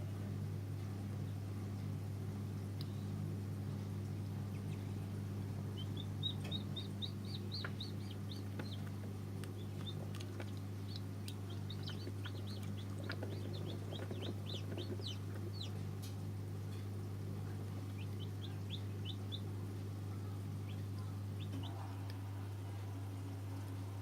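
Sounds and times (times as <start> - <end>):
steady low hum: 0.0 - 24.0
chicks peeping: 4.4 - 16.1, 17.5 - 21.8.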